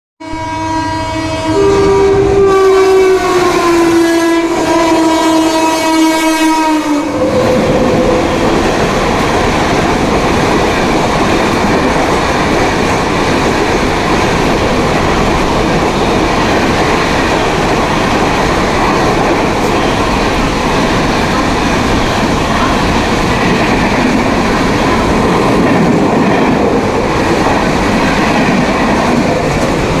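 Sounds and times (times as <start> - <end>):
locomotive horn blast: 0.2 - 8.6
train wheels clattering on rails: 6.9 - 30.0.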